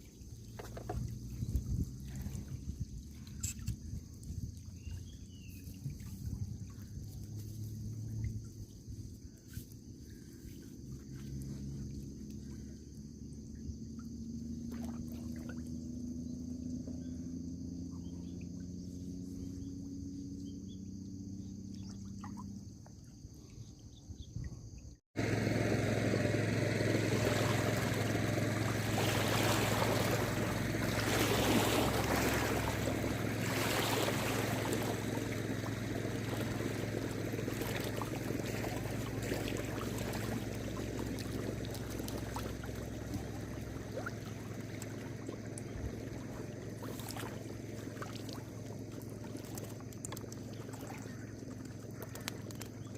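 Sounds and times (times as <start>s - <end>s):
low motor hum: 0.0s - 52.9s
faint high buzz: 25.2s - 40.5s
water rushing and splashing: 26.0s - 52.9s.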